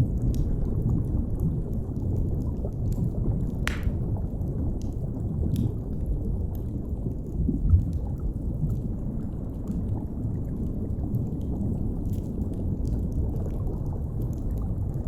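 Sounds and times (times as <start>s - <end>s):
underwater rumble of moving water: 0.0s - 15.0s
fire crackling: 3.4s - 4.5s.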